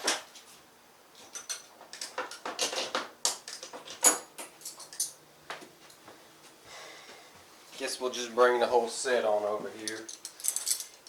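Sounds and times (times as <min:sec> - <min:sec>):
metal tools clinking and rattling: 0:01.2 - 0:05.2, 0:09.9 - 0:11.0.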